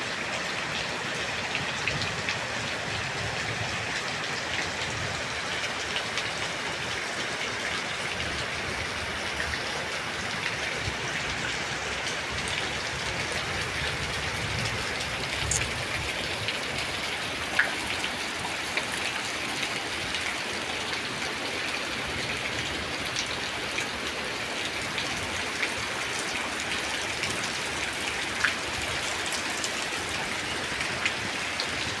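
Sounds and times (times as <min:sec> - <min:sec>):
raindrops ticking: 0:11.1 - 0:20.2.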